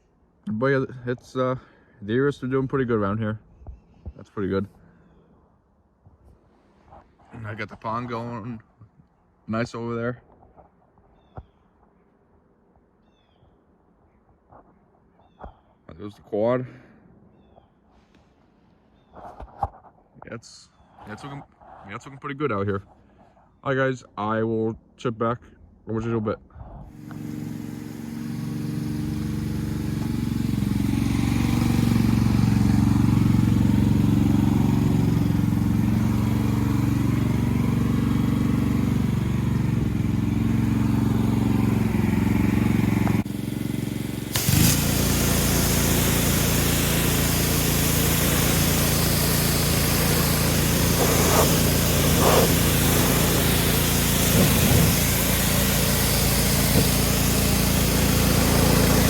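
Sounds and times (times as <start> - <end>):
small gasoline engine running: 26.9 - 59.0
pressure washer spraying hiss: 27.0 - 59.0.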